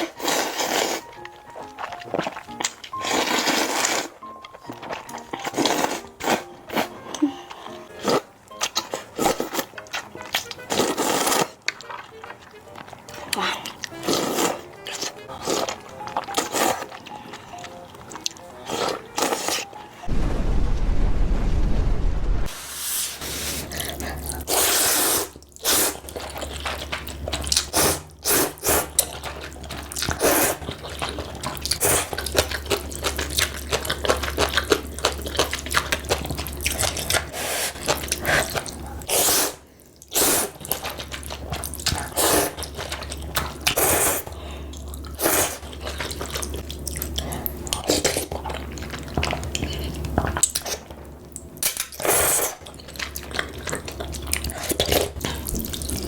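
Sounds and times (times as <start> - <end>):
noodle slurp: 0.0 - 1.1, 2.9 - 4.2, 5.4 - 9.7, 10.4 - 11.8, 13.1 - 15.8, 22.6 - 26.9, 27.5 - 29.2, 30.0 - 32.5, 35.4 - 43.0, 43.6 - 44.3, 45.1 - 46.4, 52.0 - 56.0
wet chewing and lip-smacking: 0.0 - 19.9, 23.7 - 56.0
low steady hum: 19.8 - 22.6.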